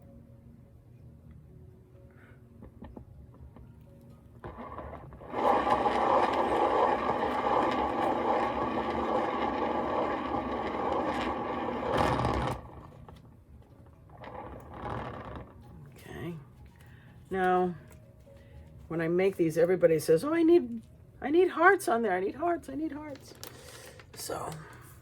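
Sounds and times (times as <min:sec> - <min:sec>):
small electric motor running: 0:05.2 - 0:12.9.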